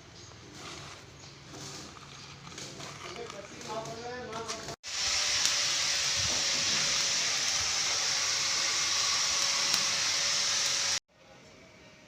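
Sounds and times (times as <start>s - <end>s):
metal cutting tool hissing: 4.8s - 11.0s.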